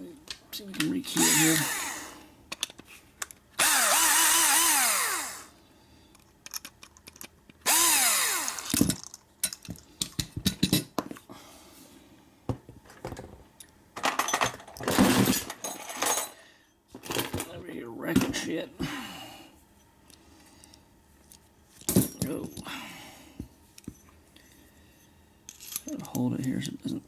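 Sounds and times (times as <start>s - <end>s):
power drill whining: 1.1s - 2.2s, 3.6s - 5.5s, 7.6s - 8.8s
small metal parts clicking: 6.1s - 7.8s, 8.4s - 10.8s, 25.5s - 26.7s.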